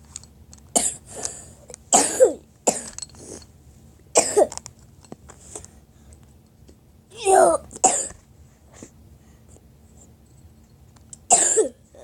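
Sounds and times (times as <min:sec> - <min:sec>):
person coughing hard: 0:00.8 - 0:01.0, 0:01.9 - 0:03.0, 0:04.2 - 0:04.5, 0:07.8 - 0:08.2, 0:11.3 - 0:12.0.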